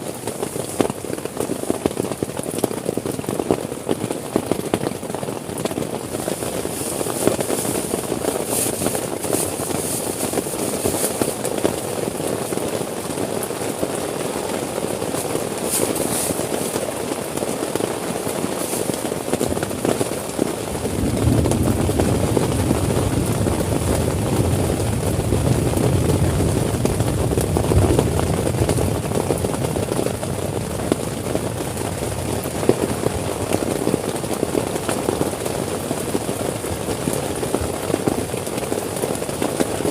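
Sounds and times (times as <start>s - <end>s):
heavy rain on a tent: 0.0s - 39.9s
deep low rumble: 20.8s - 29.4s.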